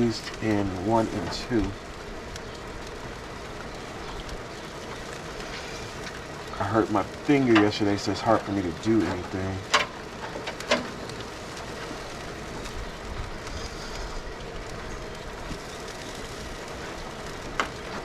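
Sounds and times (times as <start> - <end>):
rain hissing on surfaces: 0.0 - 18.0.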